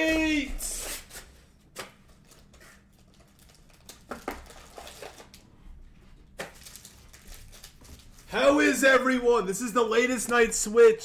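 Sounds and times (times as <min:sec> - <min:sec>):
card packaging crinkling: 0:02.2 - 0:05.4, 0:06.4 - 0:08.3.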